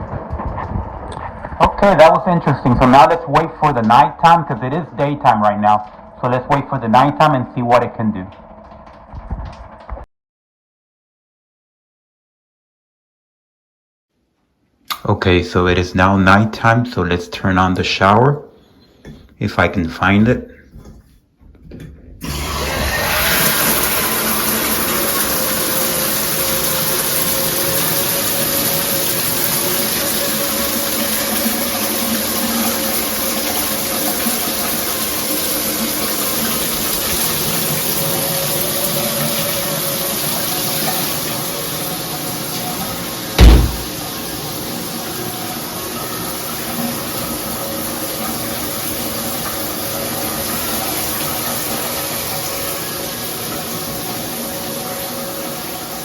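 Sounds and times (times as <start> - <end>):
shower spraying water: 22.2 - 56.0
sharp loud knock: 43.4 - 44.0.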